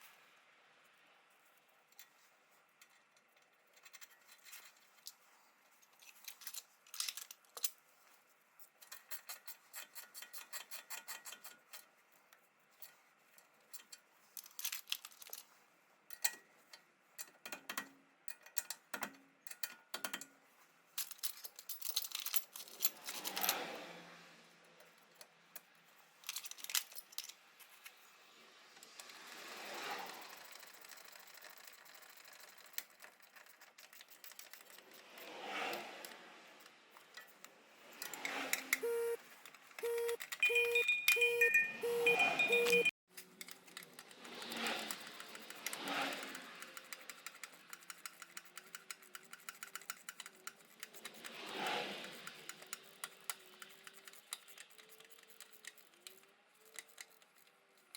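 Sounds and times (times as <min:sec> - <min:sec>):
metal tools clinking: 0:21.0 - 0:23.7, 0:26.2 - 0:27.7, 0:39.9 - 0:44.0
ratchet wrench clicking: 0:43.4 - 0:57.9.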